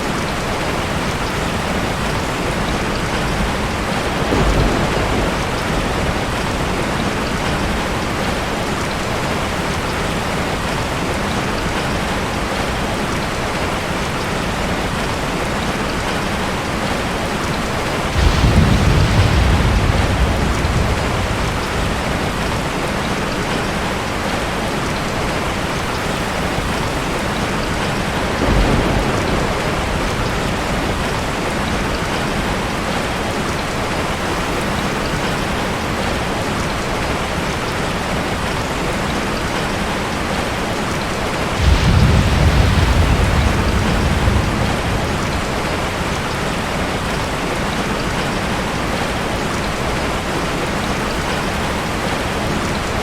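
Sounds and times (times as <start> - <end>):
heavy rain: 0.0 - 53.0
thunder rumbling: 0.2 - 11.8, 17.2 - 24.5, 25.4 - 35.1, 40.9 - 48.2.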